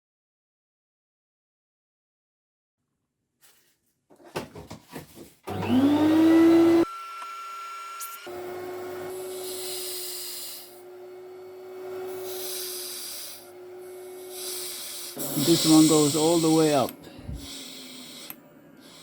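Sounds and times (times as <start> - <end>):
vacuum cleaner motor whining: 5.4 - 19.0
air hiss: 9.2 - 10.8, 12.1 - 19.0.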